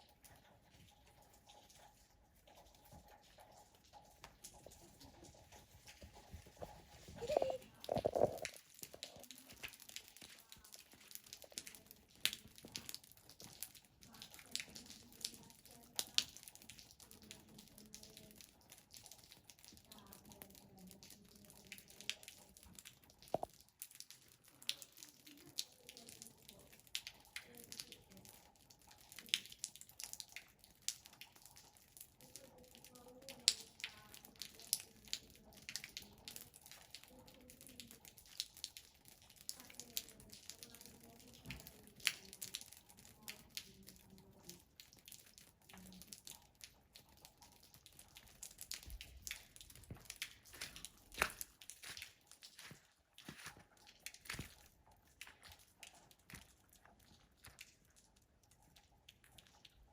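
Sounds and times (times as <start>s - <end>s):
faint voice: 7.0s - 9.4s.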